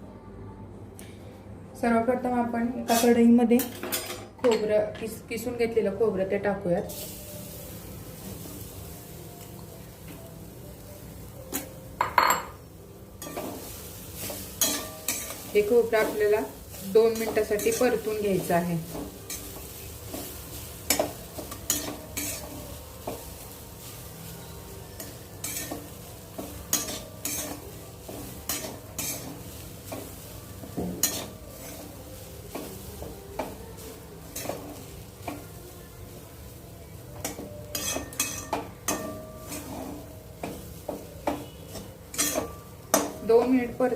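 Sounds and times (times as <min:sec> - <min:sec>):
faint sizzle: 0:04.7 - 0:43.9
utensil stirring and scraping pan: 0:13.2 - 0:43.9.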